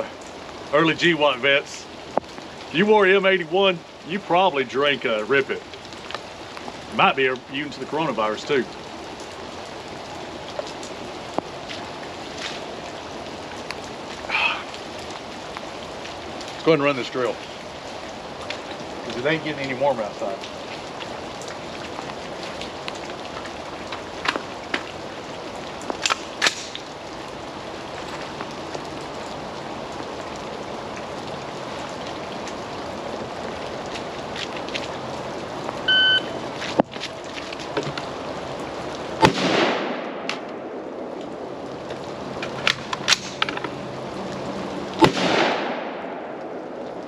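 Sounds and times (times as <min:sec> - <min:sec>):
steady rain: 0:00.0 - 0:47.0
shot timer beep: 0:35.9 - 0:36.4
rifle shot echoing: 0:39.2 - 0:40.7, 0:45.0 - 0:46.4.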